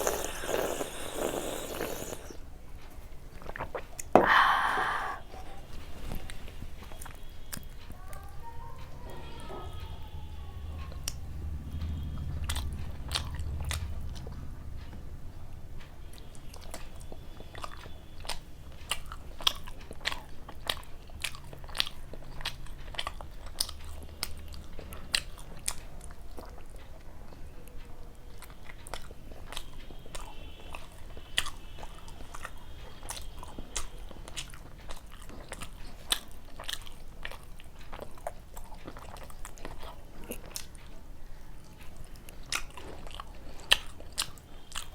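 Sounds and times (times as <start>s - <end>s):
chewing and crunching: 0.0s - 4.2s, 16.0s - 44.9s.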